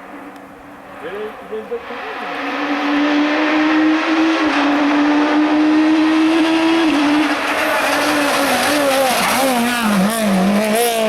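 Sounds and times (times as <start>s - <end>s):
rally car engine at high revs: 0.8s - 11.0s.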